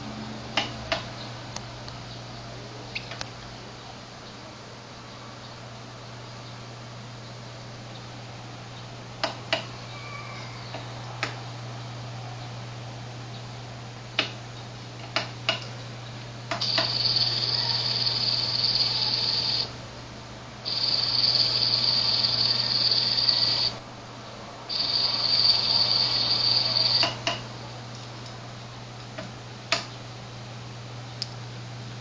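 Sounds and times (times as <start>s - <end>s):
small motor high-pitched whine: 16.6s - 19.8s, 20.6s - 23.8s, 24.7s - 27.2s.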